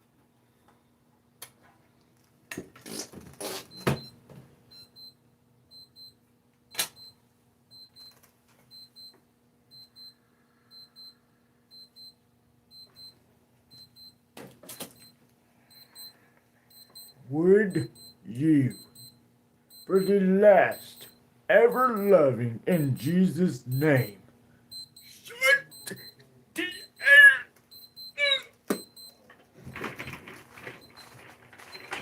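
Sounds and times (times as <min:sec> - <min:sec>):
alarm clock beeping: 0:03.7 - 0:06.2, 0:06.9 - 0:08.1, 0:08.7 - 0:14.2, 0:14.8 - 0:29.2, 0:29.8 - 0:32.0
knocks and handling clatter: 0:28.7 - 0:32.0.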